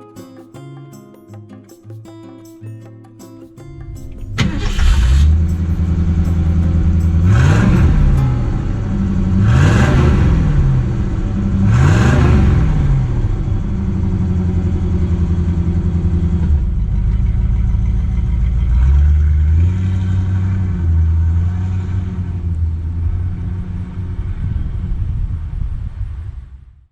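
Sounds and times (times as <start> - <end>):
car engine revving: 4.2 - 24.9.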